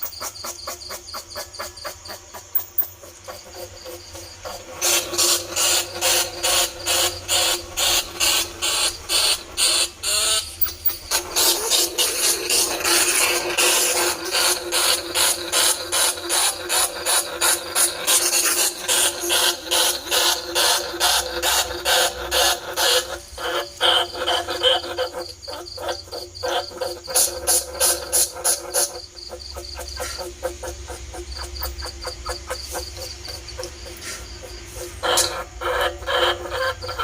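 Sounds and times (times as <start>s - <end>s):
rapid repeated squeaks: 0.0s - 37.0s.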